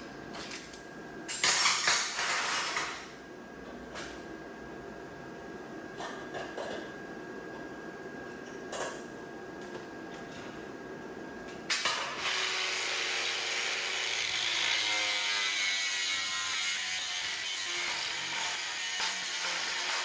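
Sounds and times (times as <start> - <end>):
power tool grinding metal: 12.1 - 20.0.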